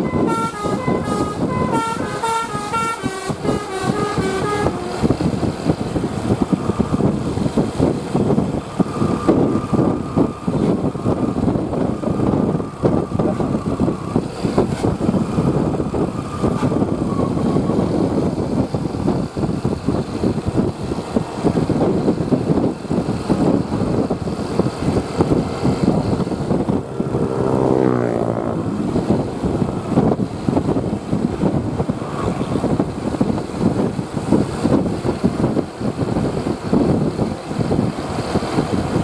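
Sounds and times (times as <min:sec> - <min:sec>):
pitched tone: 0:00.0 - 0:05.1
bus engine and road noise: 0:00.0 - 0:39.0.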